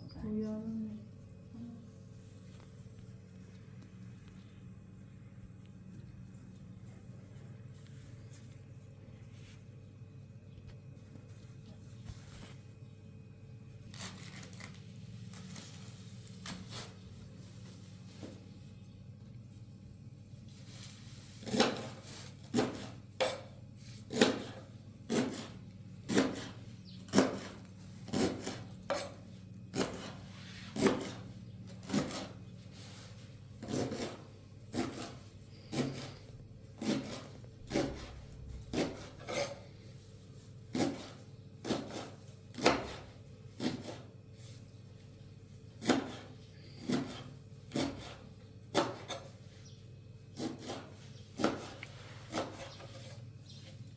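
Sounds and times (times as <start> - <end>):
steady low hum: 0.0 - 53.9.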